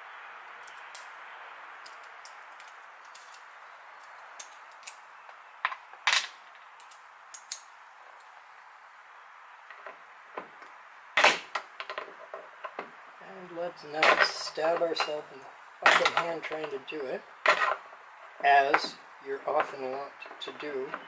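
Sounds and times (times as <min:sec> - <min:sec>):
steady background hiss: 0:00.0 - 0:21.0
metallic clicks and snaps: 0:00.6 - 0:01.2, 0:01.8 - 0:05.0, 0:05.7 - 0:08.3.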